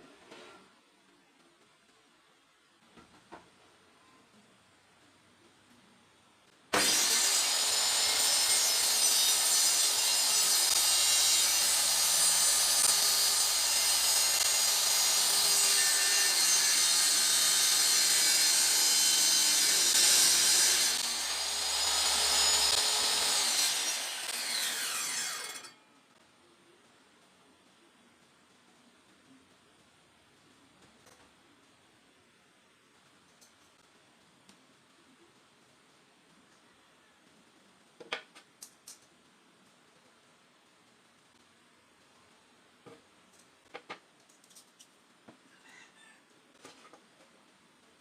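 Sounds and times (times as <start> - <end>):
table saw cutting wood: 6.7 - 25.7
saw blade winding down: 6.8 - 25.8.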